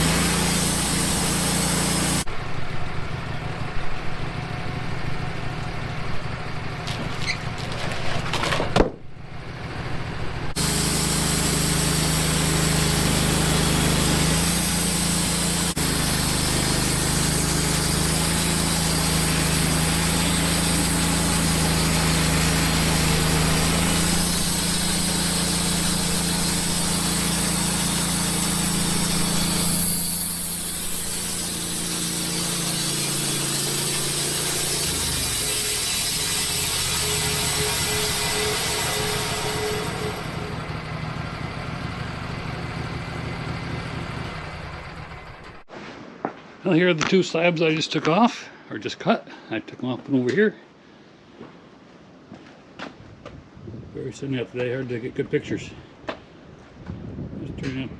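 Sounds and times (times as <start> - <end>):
band sawmill cutting log: 0.0 - 45.7.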